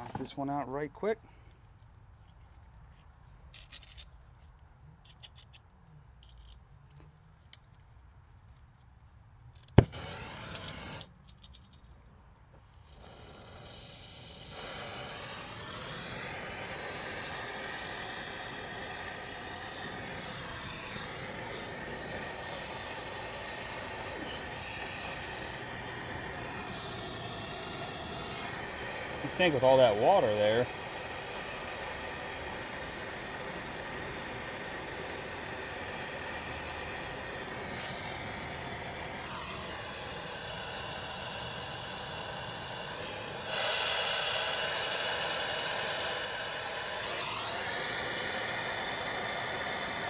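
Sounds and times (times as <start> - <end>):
torch flame hissing: 9.8 - 11.1, 12.9 - 50.0.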